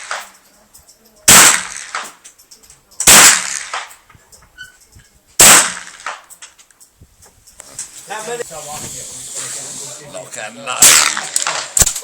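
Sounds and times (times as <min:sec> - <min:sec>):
rifle shots: 0:00.0 - 0:00.4, 0:01.3 - 0:02.2, 0:03.0 - 0:04.0, 0:05.4 - 0:06.3, 0:10.8 - 0:12.0.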